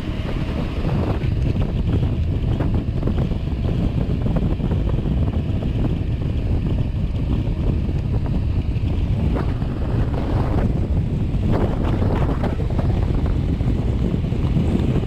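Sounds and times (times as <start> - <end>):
wind buffeting microphone: 0.0 - 15.0.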